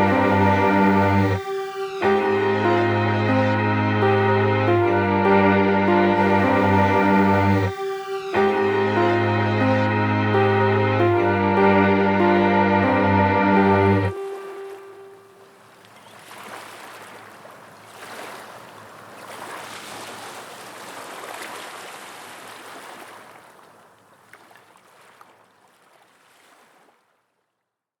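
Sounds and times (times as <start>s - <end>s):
sea water washing: 14.1s - 27.0s.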